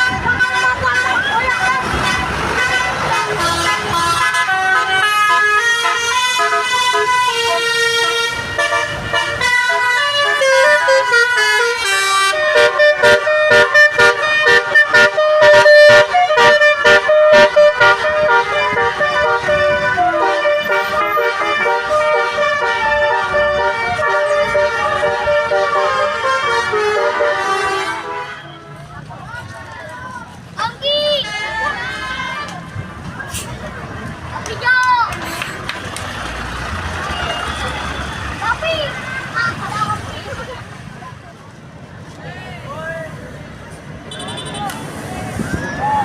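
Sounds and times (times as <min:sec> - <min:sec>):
bus musical horn melody: 0:00.0 - 0:28.8.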